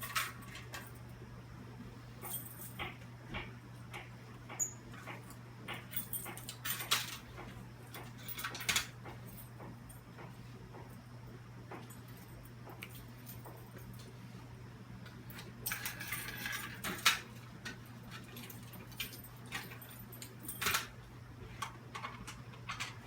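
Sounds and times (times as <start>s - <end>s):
steady low hum: 0.0s - 23.0s
metal clicks and rattles: 15.3s - 23.0s.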